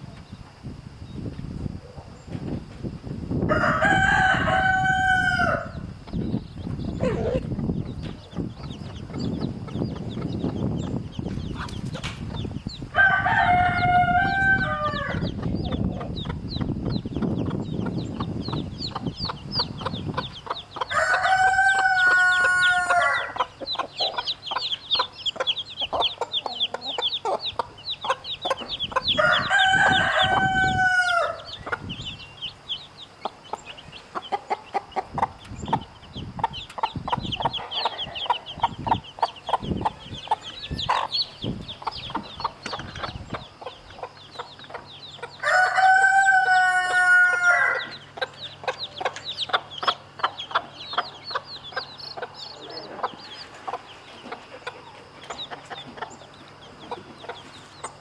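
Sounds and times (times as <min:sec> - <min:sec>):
chicks peeping: 0:00.0 - 0:58.0
rooster crowing: 0:03.4 - 0:05.9, 0:12.9 - 0:15.4, 0:20.9 - 0:23.5, 0:29.0 - 0:31.6, 0:45.4 - 0:48.0.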